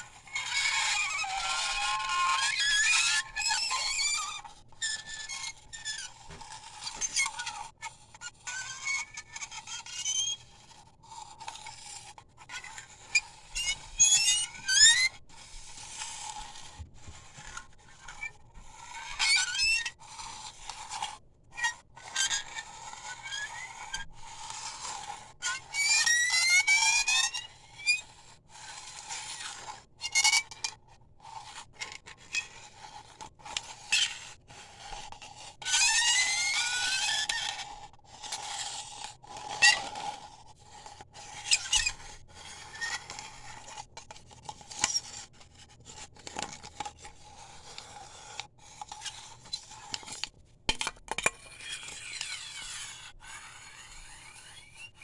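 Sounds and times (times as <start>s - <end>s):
toy drum screeching squeals: 0.3s - 5.8s, 13.6s - 15.1s.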